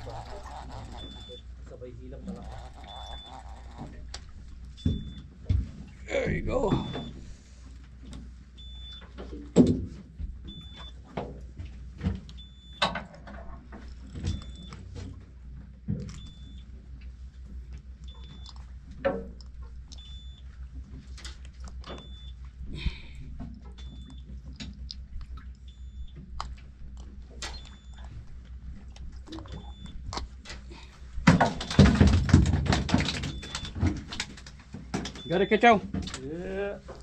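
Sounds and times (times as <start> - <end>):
boat engine humming: 0.0 - 5.4.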